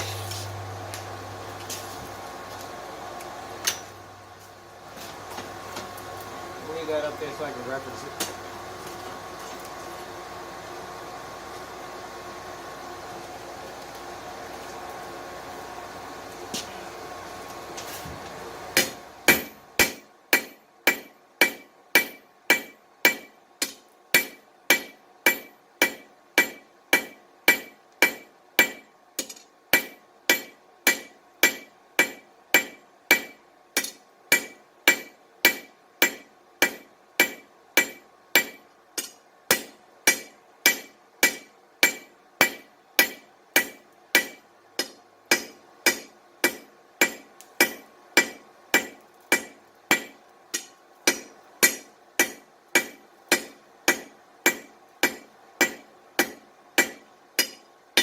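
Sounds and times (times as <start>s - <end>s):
hammer ringing on anvil: 29.8s - 58.0s.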